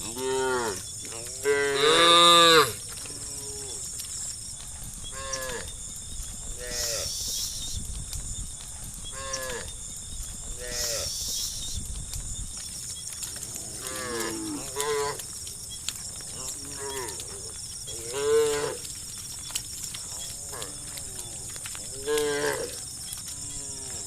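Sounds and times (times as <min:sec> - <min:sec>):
livestock calling: 0:06.5 - 0:07.6, 0:10.5 - 0:11.6.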